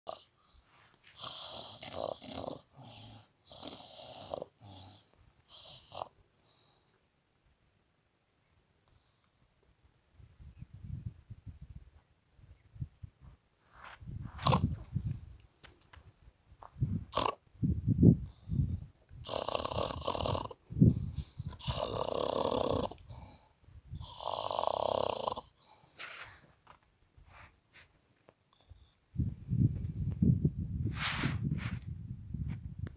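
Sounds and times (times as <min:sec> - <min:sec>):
loud hissing snores: 0:00.1 - 0:00.4, 0:01.1 - 0:06.2, 0:14.4 - 0:14.7, 0:17.1 - 0:17.4, 0:19.2 - 0:25.8
soft low breath: 0:18.1 - 0:18.9, 0:20.6 - 0:21.9, 0:23.0 - 0:24.2, 0:25.5 - 0:27.9.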